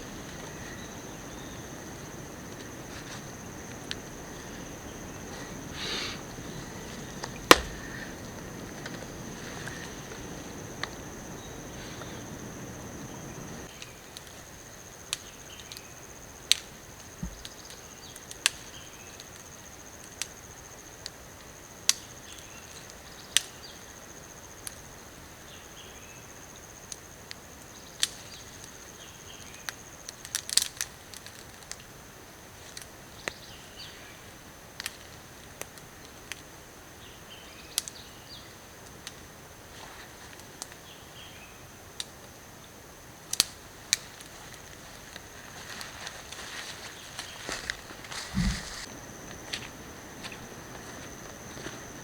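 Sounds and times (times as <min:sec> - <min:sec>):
high-pitched insect trill: 0:00.0 - 0:13.8, 0:44.3 - 0:52.0
sharp ticks and pops: 0:03.7 - 0:04.8, 0:07.0 - 0:11.1, 0:43.2 - 0:45.2.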